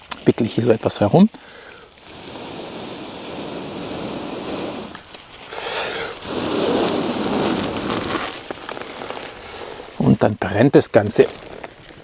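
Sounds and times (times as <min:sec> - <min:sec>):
breaths blown into tinder: 0:01.4 - 0:10.2.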